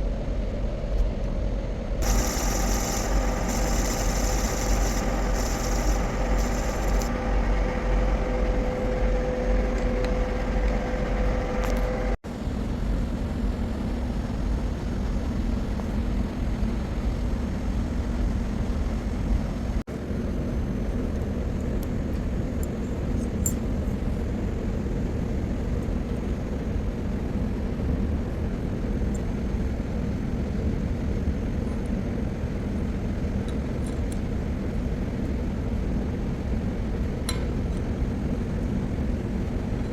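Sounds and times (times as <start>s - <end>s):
loud machinery drone: 1.9s - 16.9s
humming tone: 2.0s - 12.2s.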